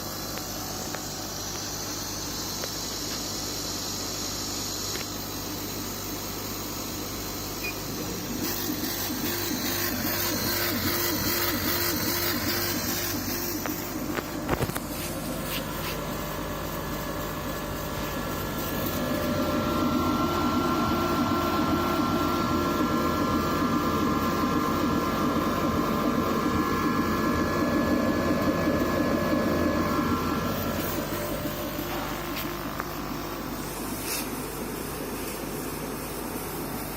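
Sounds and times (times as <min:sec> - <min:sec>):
laser cutter humming and whining: 0:00.0 - 0:36.9.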